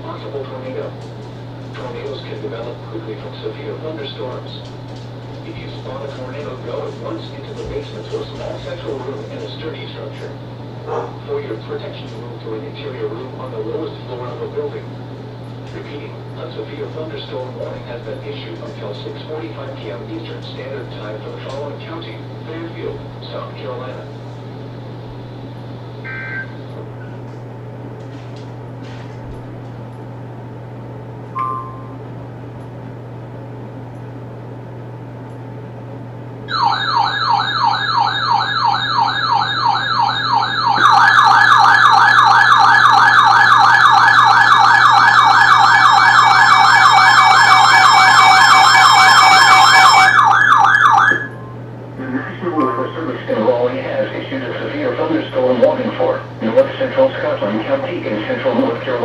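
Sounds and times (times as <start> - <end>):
low electronic hum: 0.0 - 59.0
faint radio noise: 5.4 - 14.9, 52.0 - 59.0
warbling electronic siren: 26.0 - 26.7, 36.5 - 51.6.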